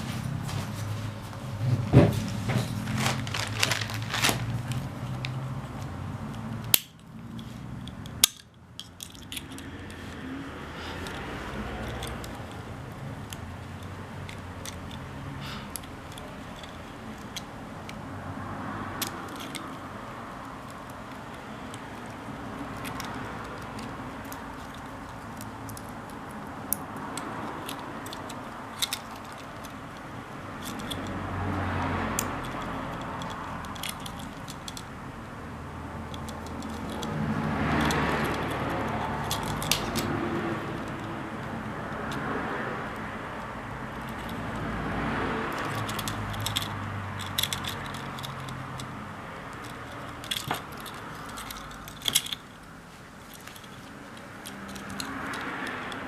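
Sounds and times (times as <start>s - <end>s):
light clicks and rattles: 18.9s - 35.0s, 36.0s - 42.4s, 45.4s - 56.0s.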